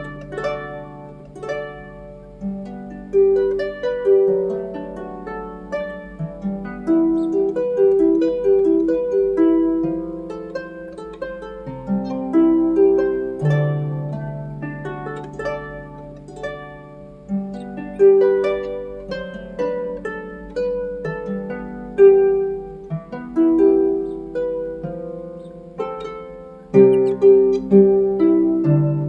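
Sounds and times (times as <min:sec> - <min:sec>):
background music melody: 0:00.0 - 0:29.0.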